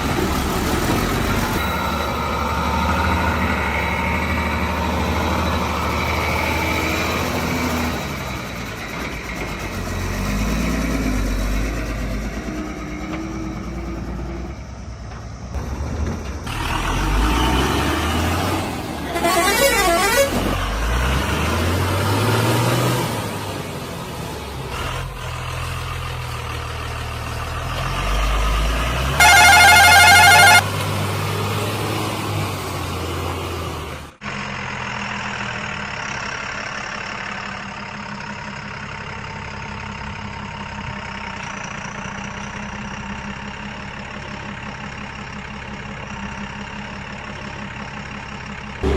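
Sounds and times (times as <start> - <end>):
truck engine revving: 0.0 - 41.3
loud horn blast: 19.0 - 20.6, 29.2 - 30.7.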